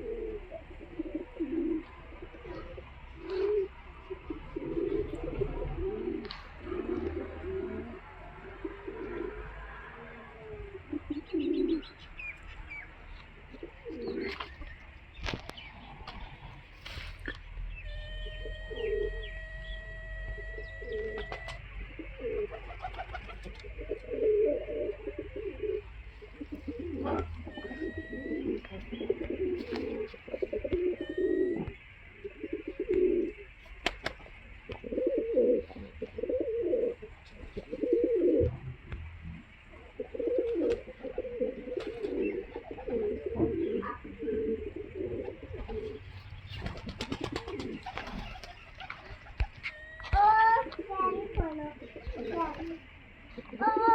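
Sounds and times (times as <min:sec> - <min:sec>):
birds chirping: 0:00.0 - 0:53.9
pigeons cooing: 0:00.0 - 0:53.9.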